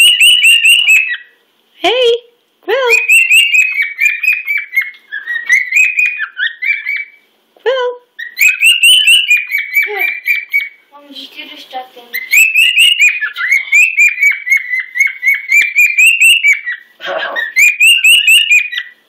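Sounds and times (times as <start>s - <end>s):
cockatiel whistling: 0.0s - 1.4s, 2.9s - 7.2s, 8.2s - 10.8s, 12.1s - 19.0s
low bird chatter: 0.0s - 1.4s, 2.9s - 7.3s, 8.2s - 19.0s.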